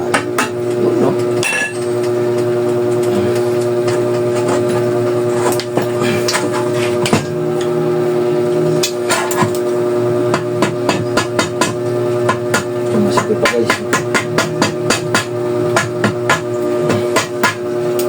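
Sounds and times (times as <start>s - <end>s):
steady hum: 0.0s - 18.0s
hammer knocking on bicycle frame: 10.3s - 17.6s.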